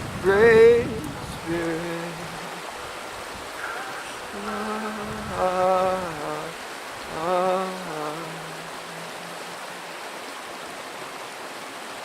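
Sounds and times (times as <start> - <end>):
rushing running water: 0.0 - 12.0.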